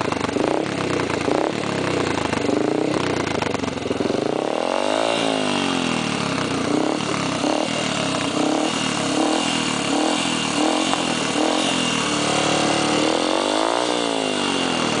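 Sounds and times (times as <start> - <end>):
motorcycle engine throttle blips: 0.0 - 15.0.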